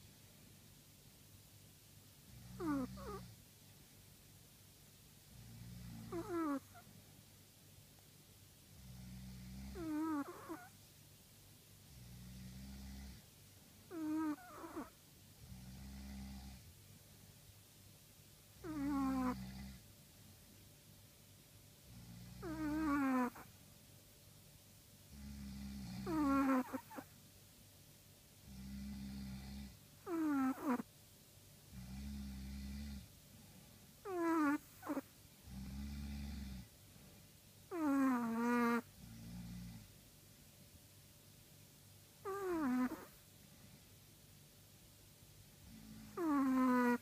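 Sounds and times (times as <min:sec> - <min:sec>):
dog snoring: 0:02.2 - 0:03.4, 0:05.3 - 0:06.9, 0:08.7 - 0:10.8, 0:11.9 - 0:16.7, 0:18.6 - 0:19.9, 0:21.8 - 0:23.6, 0:25.1 - 0:27.1, 0:28.4 - 0:30.9, 0:31.7 - 0:37.1, 0:37.7 - 0:40.0, 0:42.2 - 0:43.3, 0:45.6 - 0:47.0.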